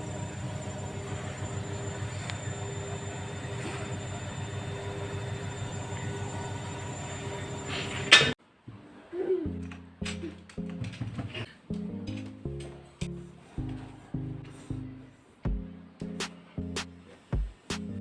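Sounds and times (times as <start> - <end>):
low mechanical rumble: 0.0 - 8.2
faint hum: 0.0 - 8.4.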